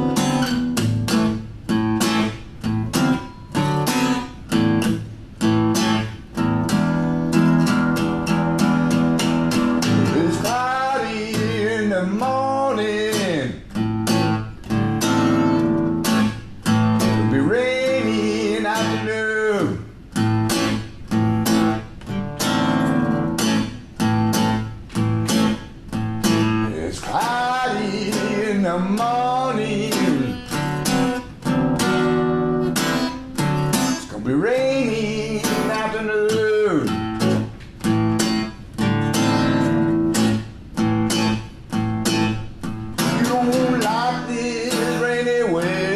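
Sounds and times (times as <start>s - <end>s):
strummed acoustic guitar: 0.0s - 45.9s
person singing: 9.9s - 13.6s, 17.2s - 19.8s, 26.6s - 30.5s, 33.9s - 37.0s, 43.0s - 45.9s.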